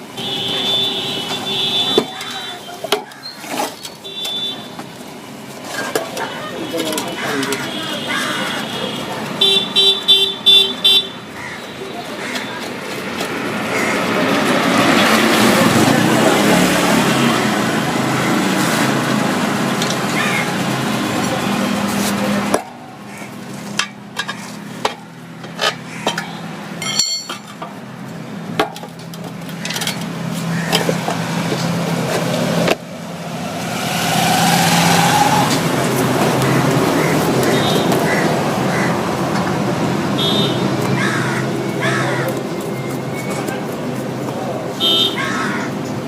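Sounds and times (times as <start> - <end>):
road traffic passing: 0.0 - 46.0
vehicle engine rising: 26.5 - 44.7.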